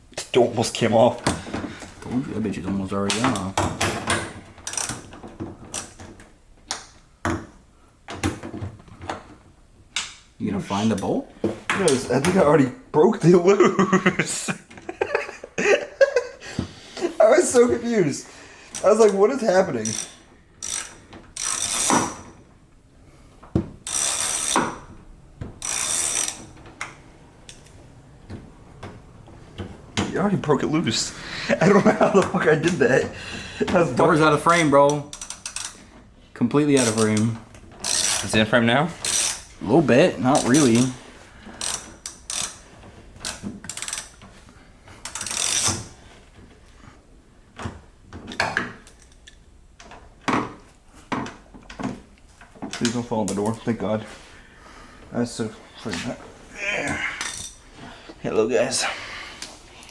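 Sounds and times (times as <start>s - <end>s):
hand tools clicking and rattling: 3.0s - 7.4s, 17.3s - 22.5s, 23.8s - 39.6s, 40.3s - 46.5s, 47.6s - 53.6s, 55.9s - 57.9s
ratchet wrench clicking: 4.7s - 5.1s, 19.8s - 22.2s, 23.8s - 24.9s, 25.6s - 27.7s, 34.4s - 35.8s, 36.8s - 38.4s, 39.0s - 39.5s, 41.6s - 42.6s, 43.2s - 44.2s, 45.0s - 45.8s, 57.2s - 57.6s.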